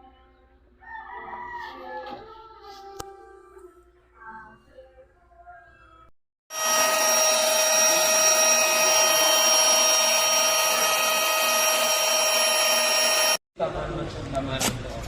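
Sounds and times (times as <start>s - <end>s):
handheld vacuum cleaner running: 6.5s - 13.4s.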